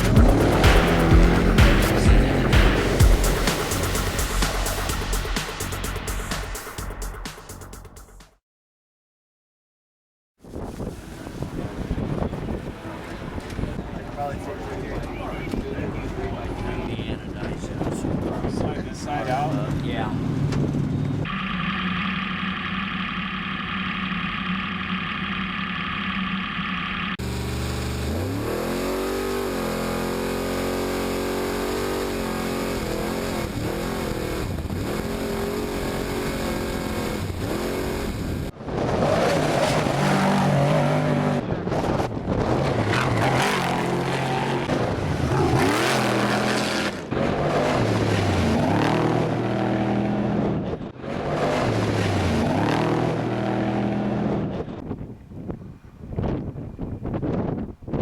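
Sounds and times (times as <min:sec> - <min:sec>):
truck engine revving: 0:00.0 - 0:08.2, 0:18.9 - 0:54.9.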